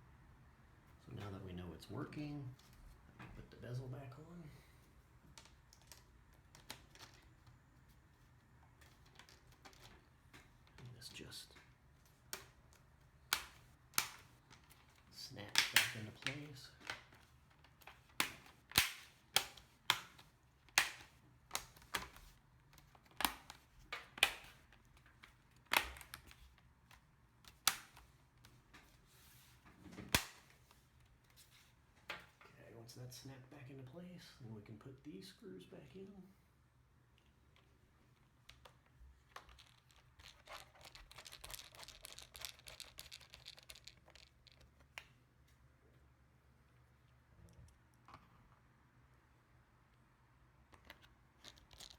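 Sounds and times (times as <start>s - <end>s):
screwdriver clicking and scratching: 39.3s - 44.8s.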